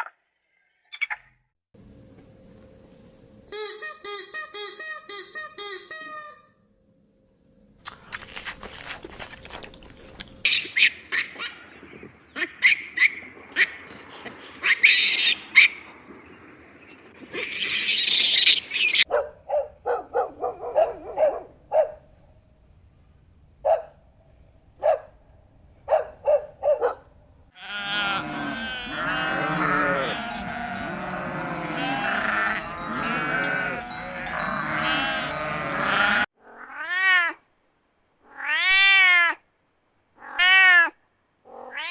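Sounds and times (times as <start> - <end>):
herd bleating: 27.6 - 36.3
short high animal calls: 27.6 - 37.1.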